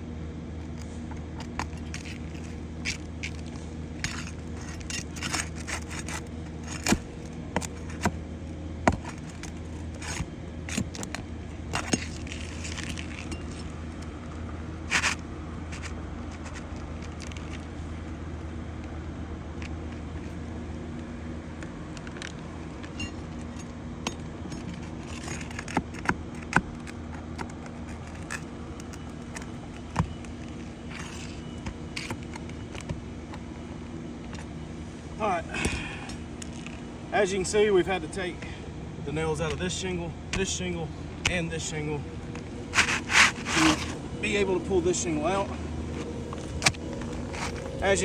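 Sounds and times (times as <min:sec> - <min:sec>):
steady low hum: 0:00.0 - 0:48.0
pry tool scraping roof shingles: 0:00.8 - 0:08.2, 0:08.9 - 0:14.0, 0:24.6 - 0:32.9, 0:42.6 - 0:48.0.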